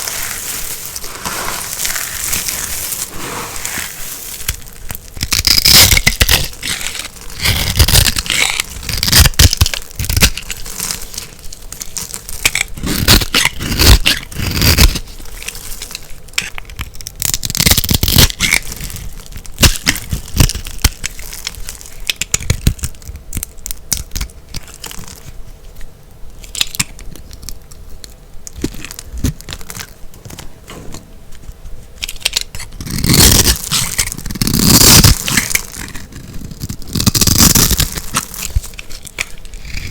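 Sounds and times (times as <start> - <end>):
knife cutting crunchy soap: 0.0 - 25.3.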